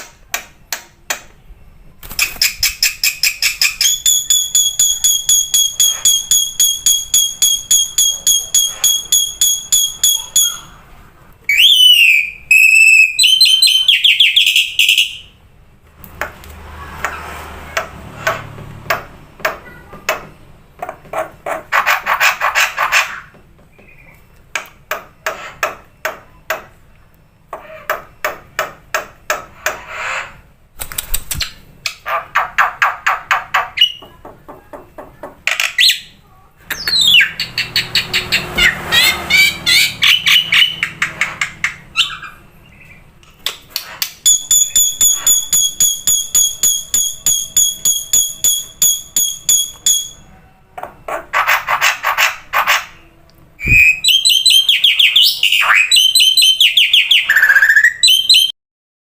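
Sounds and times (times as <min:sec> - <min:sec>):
songbird singing: 0:01.3 - 0:15.5, 0:23.2 - 0:28.5, 0:32.8 - 0:43.3, 0:53.0 - 0:58.6.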